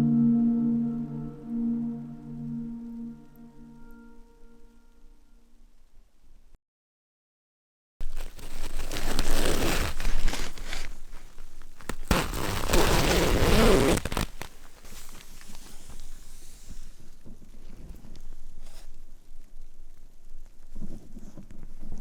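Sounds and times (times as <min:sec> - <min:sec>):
rustling and crinkling: 0:08.0 - 0:22.0.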